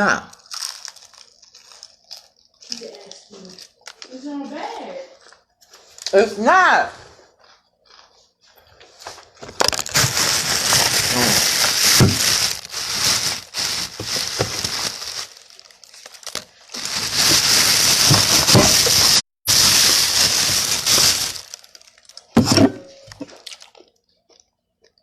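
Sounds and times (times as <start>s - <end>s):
paper bag and packaging rustling: 0.4s - 4.2s, 9.0s - 23.6s.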